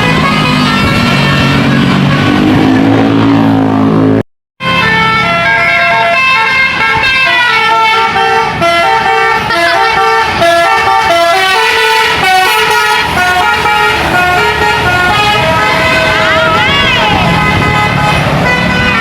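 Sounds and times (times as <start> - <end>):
bus engine and road noise: 0.0 - 19.0
multi-tone air horn playing a tune: 4.6 - 19.0.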